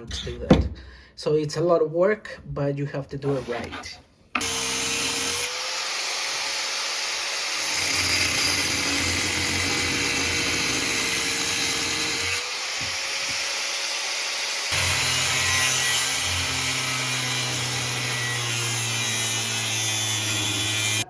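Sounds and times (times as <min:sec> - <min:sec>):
power tool cutting metal: 0:04.4 - 0:21.0.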